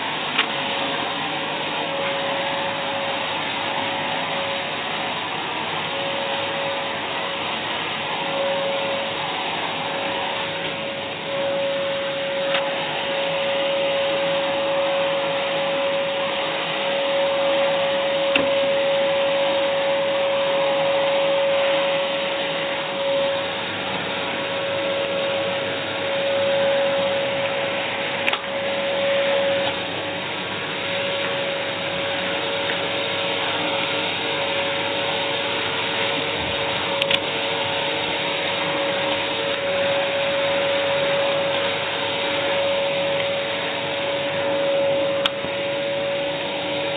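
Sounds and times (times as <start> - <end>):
vacuum cleaner running: 0.0 - 46.9.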